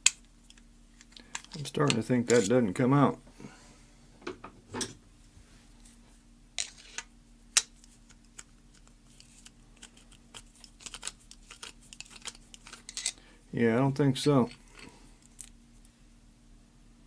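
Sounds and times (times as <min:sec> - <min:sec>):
metal tool scraping padlock: 0:09.1 - 0:13.2.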